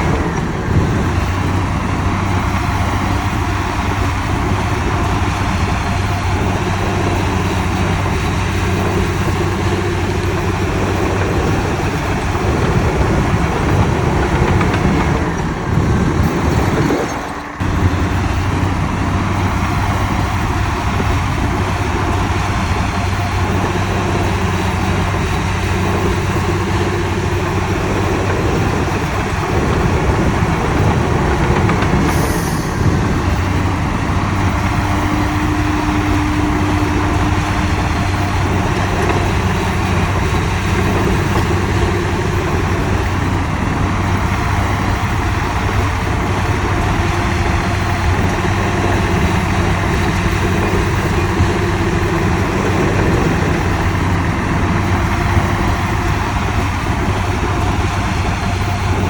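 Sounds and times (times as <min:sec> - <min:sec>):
heavy diesel machinery running: 0:00.0 - 0:59.0.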